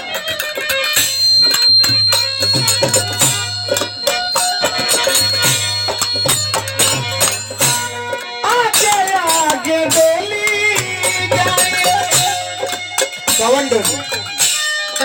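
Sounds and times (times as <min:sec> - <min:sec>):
sustained high tone: 0:01.0 - 0:08.2.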